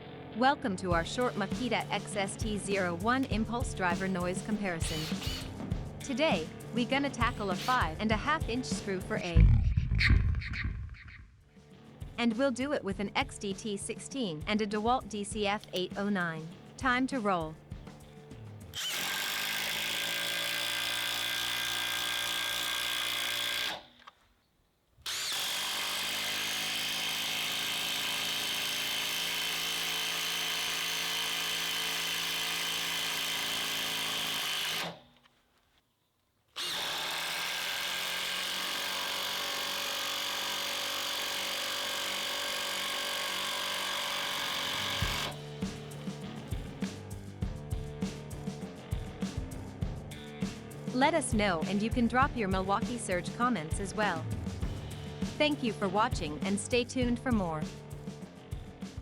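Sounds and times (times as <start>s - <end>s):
impact driver hammering: 4.0s - 5.7s, 7.2s - 7.9s, 18.8s - 24.1s, 25.1s - 35.0s, 36.6s - 45.4s.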